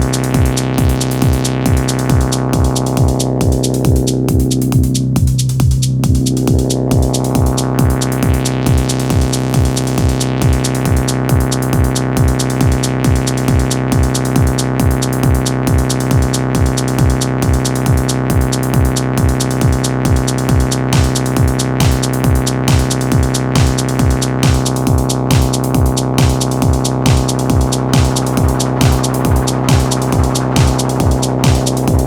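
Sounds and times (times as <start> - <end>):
drum machine kick: 0.0 - 32.0
synth drone: 16.2 - 32.0.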